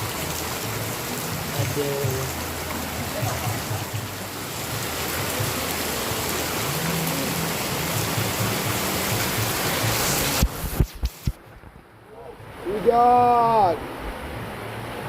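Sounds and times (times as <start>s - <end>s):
heavy rain falling: 0.0s - 11.5s.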